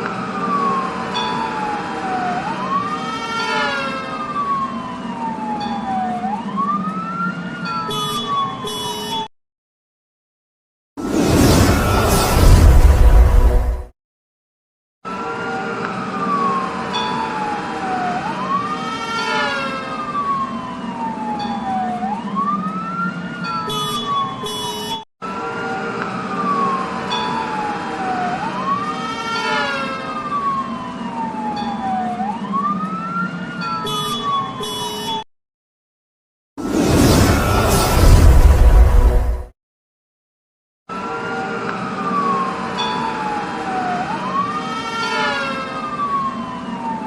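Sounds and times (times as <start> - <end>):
police siren wailing: 0.0 - 9.3, 15.1 - 35.2, 40.9 - 47.0.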